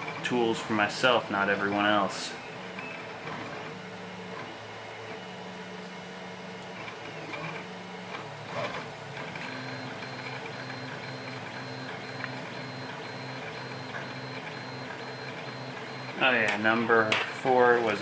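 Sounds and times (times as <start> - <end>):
stepper motors humming: 6.6 - 16.9.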